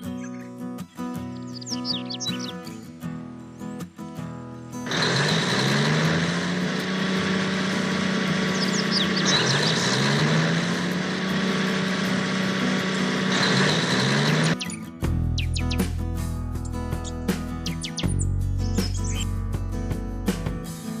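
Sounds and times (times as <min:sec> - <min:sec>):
small motor buzzing hum: 0:04.9 - 0:14.6.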